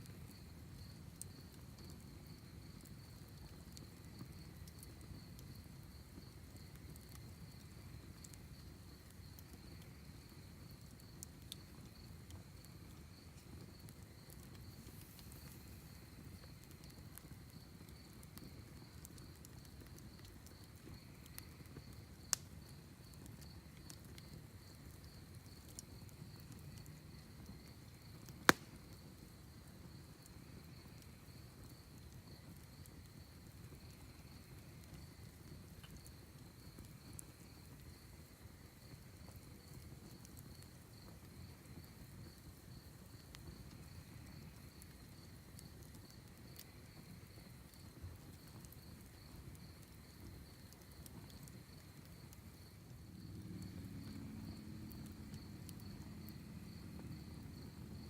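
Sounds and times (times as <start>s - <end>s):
wood fire popping: 0.0s - 58.0s
crickets trilling: 28.8s - 58.0s.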